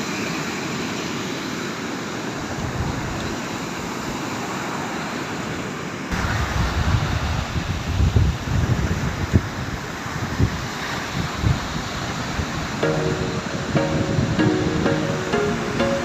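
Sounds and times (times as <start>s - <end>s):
wind: 0.0s - 16.0s
wind buffeting microphone: 6.2s - 11.8s.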